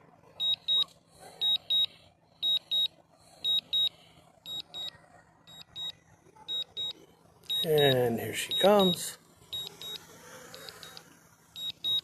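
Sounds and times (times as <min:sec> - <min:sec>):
remote controller beeping: 0:00.4 - 0:02.9, 0:03.5 - 0:03.9, 0:04.5 - 0:04.9, 0:05.5 - 0:05.9, 0:06.5 - 0:06.9, 0:07.5 - 0:10.0, 0:10.6 - 0:11.0, 0:11.6 - 0:12.0.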